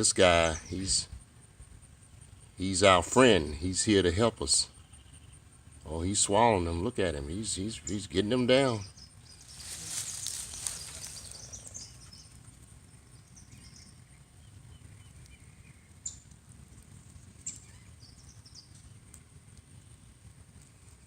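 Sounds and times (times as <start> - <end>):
low steady hum: 0.0 - 21.0
faint bird chirps: 4.6 - 5.5, 7.8 - 16.3, 17.4 - 20.2
rustle: 8.7 - 21.0.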